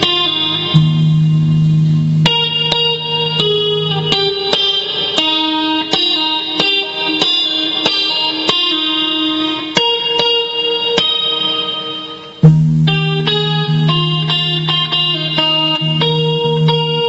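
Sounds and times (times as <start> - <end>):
electric guitar picking notes: 0.0 - 17.0.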